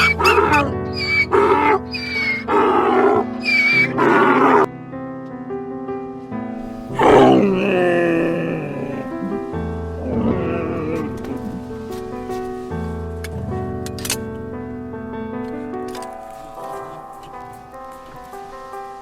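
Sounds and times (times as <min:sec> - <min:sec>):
animal calls: 0:06.6 - 0:11.8
background music: 0:06.6 - 0:19.0.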